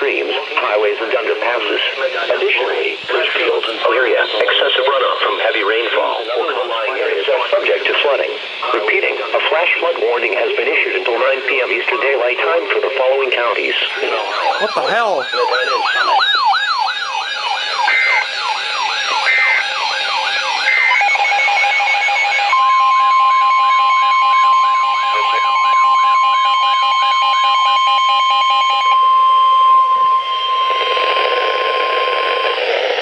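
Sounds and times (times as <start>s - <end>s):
radio static: 0.1s - 16.3s
yelping siren: 13.6s - 33.0s
buzzy digital header tones: 14.0s - 16.5s
steady single-pitch alert tone: 14.3s - 16.3s.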